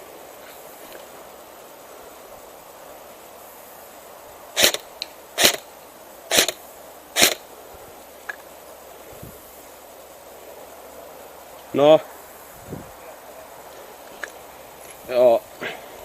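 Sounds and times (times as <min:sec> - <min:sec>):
airsoft gun shots: 0:04.6 - 0:04.8, 0:06.3 - 0:06.6, 0:07.2 - 0:07.4.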